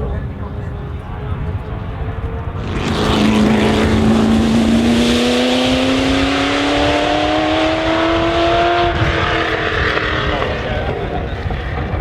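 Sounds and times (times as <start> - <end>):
racing car engine accelerating: 2.6 - 11.1.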